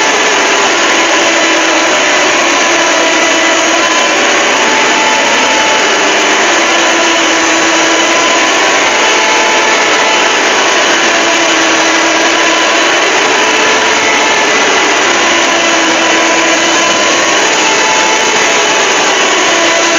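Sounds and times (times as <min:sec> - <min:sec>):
harsh static-like noise: 0:00.0 - 0:19.9.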